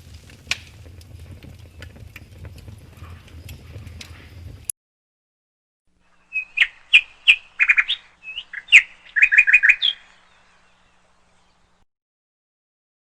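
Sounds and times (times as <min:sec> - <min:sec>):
bird-like chirps and trills: 0:06.0 - 0:11.8.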